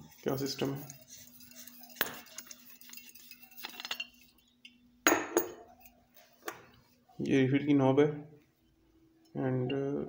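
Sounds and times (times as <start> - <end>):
small metal parts clinking: 2.2 - 4.4.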